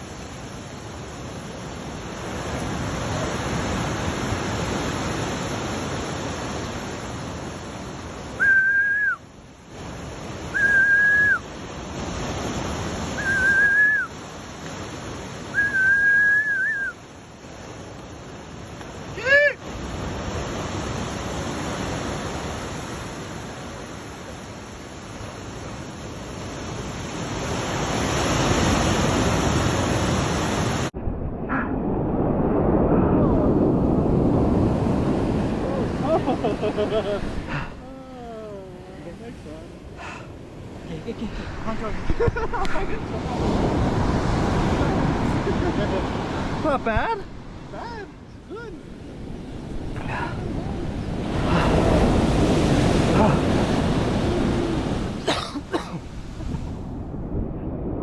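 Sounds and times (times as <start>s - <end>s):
ocean surf: 0.0s - 58.0s
wind: 0.0s - 58.0s
short level whistles: 8.4s - 9.2s, 10.5s - 11.4s, 13.2s - 14.2s, 15.5s - 17.0s.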